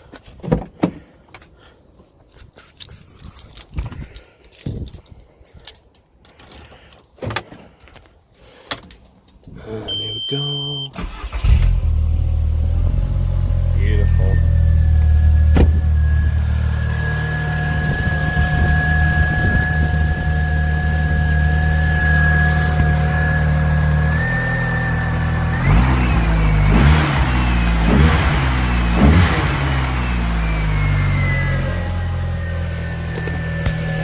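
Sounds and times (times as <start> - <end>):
car engine idling and revving: 10.9 - 34.0.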